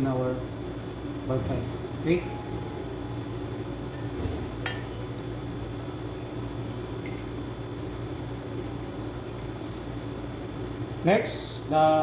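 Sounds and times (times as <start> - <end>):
fan-like hum: 0.0 - 12.0.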